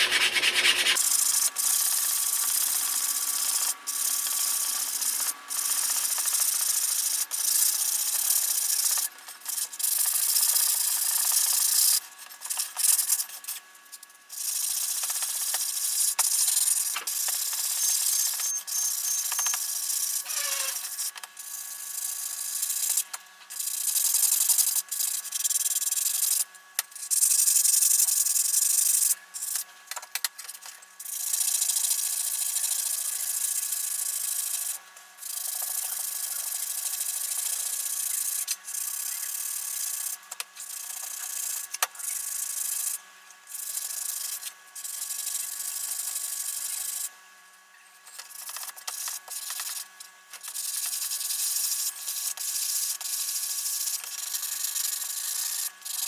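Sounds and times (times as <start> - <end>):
sanding hiss: 0.0 - 1.0.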